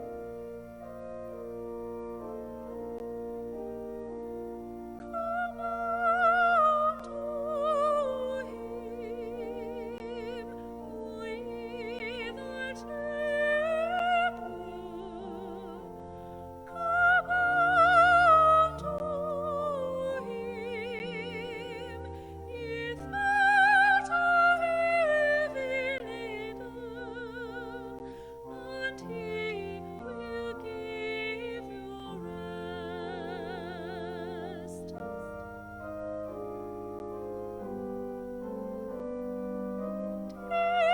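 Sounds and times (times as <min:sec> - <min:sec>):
held accompaniment chords: 0:00.0 - 0:40.9
classical solo singing with vibrato: 0:05.1 - 0:35.0, 0:40.4 - 0:40.9.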